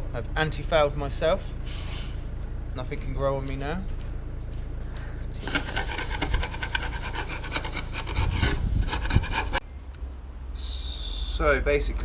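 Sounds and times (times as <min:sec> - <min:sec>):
hand file rasping on metal: 0:05.4 - 0:09.6.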